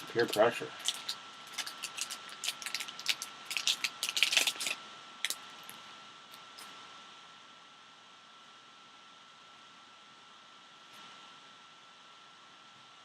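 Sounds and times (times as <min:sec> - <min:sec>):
hands handling cards and packaging: 0:00.0 - 0:05.8.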